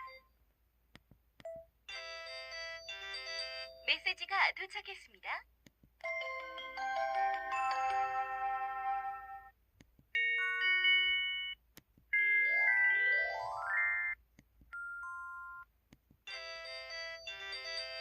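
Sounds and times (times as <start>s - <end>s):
electronic phone alert tones: 14.8s - 15.6s.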